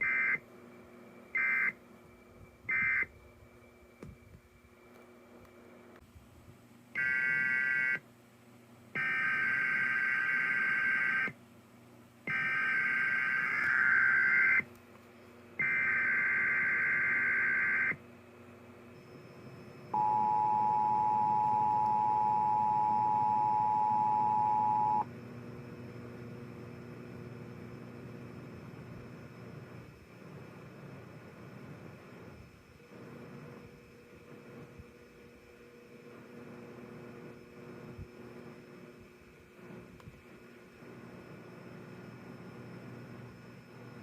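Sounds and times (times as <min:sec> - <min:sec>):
two-tone attention signal: 0:20.0 - 0:25.0.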